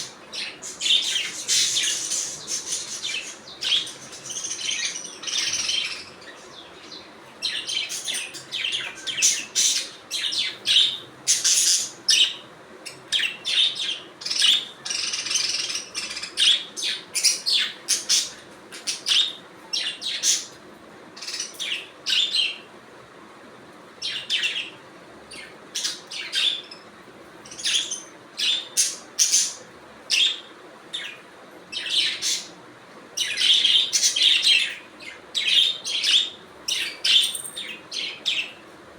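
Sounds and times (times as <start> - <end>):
budgerigars chirping: 0.0 - 20.6, 33.2 - 38.6.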